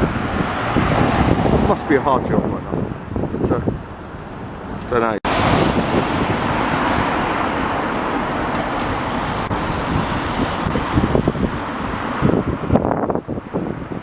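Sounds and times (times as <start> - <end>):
motor vehicle running close by: 0.0 - 2.2.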